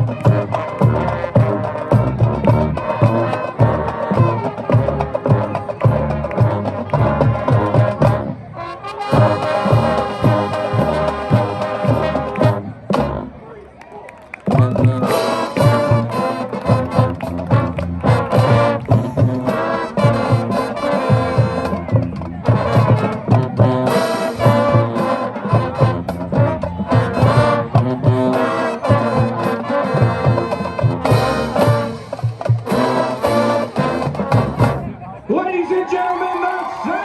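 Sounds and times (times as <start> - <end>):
marching band brass: 0.0 - 35.4
drum line beat: 14.4 - 34.9.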